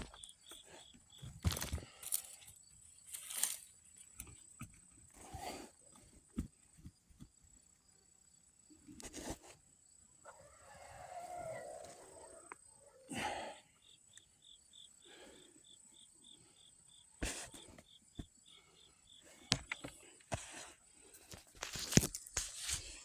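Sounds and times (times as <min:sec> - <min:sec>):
digging in garden soil: 0:00.0 - 0:07.5, 0:17.2 - 0:23.0
insect chirping: 0:00.0 - 0:09.1, 0:09.7 - 0:23.0
rooster crowing: 0:10.2 - 0:12.6.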